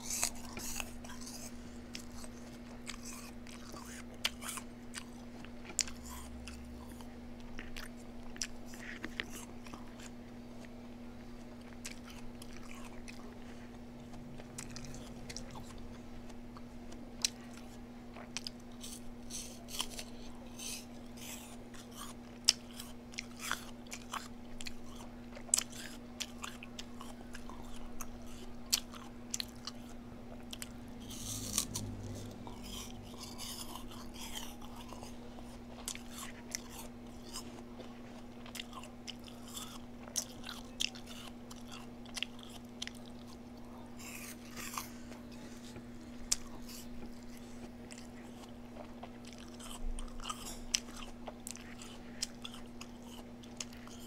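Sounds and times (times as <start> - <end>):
person chewing and biting: 0.0 - 54.0
steady low hum: 0.0 - 54.0.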